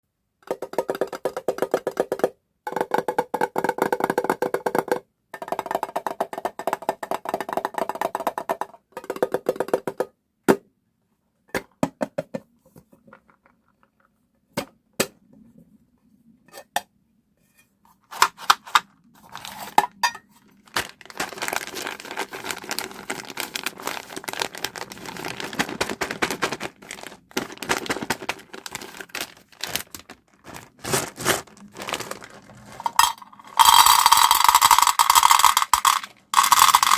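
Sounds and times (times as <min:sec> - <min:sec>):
hard candies rattling and pouring: 0:19.2 - 0:19.8, 0:20.4 - 0:36.9.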